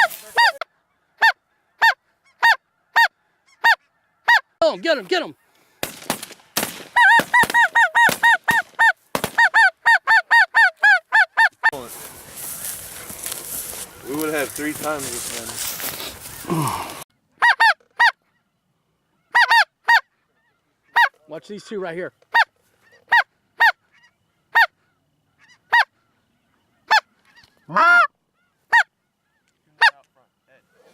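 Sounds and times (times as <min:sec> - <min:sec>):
wavering goose call: 0:00.0 - 0:04.5, 0:07.0 - 0:18.4, 0:19.2 - 0:21.2, 0:26.9 - 0:30.0
geese honking: 0:00.0 - 0:05.9, 0:06.8 - 0:30.9.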